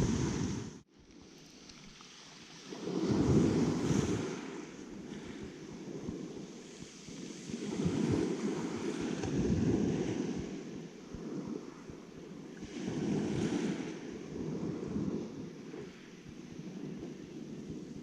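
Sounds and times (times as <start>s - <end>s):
wind buffeting microphone: 0.0s - 0.8s, 2.6s - 18.0s
faint hiss: 0.0s - 9.3s.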